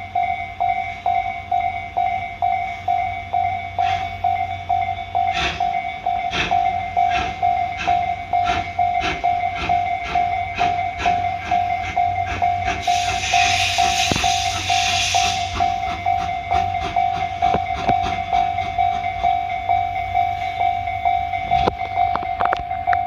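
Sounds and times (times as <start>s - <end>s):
level-crossing alarm bell: 0.0s - 23.0s
train wheels clicking on rail joints: 3.8s - 23.0s
hiss of steam: 5.3s - 5.7s, 6.3s - 9.2s, 12.3s - 15.8s.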